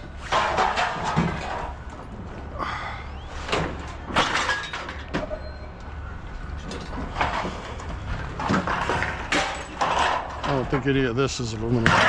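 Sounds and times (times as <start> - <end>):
scrap pieces knocking and clattering: 0.1 - 1.9, 3.8 - 5.3, 6.6 - 11.0, 11.7 - 12.0.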